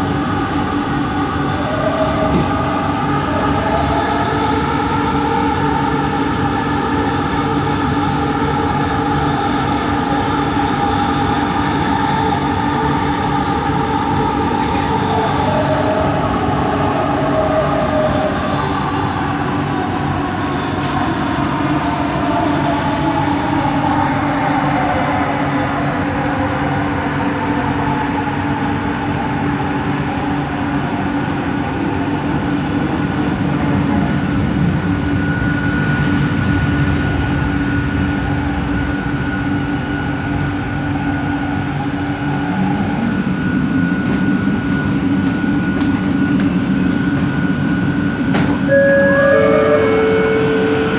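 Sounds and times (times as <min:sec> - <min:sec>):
metro car rumbling and whining: 0:00.0 - 0:50.9.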